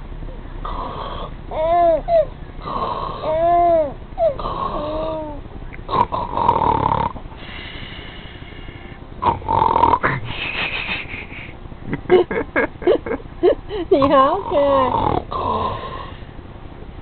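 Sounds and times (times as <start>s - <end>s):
person snoring: 5.9s - 10.2s, 14.9s - 16.3s.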